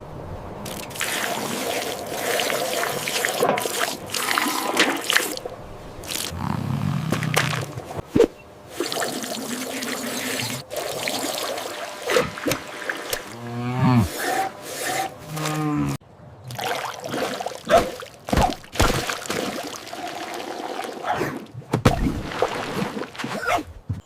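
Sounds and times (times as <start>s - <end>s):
cow mooing: 6.3s - 7.5s, 13.3s - 16.0s.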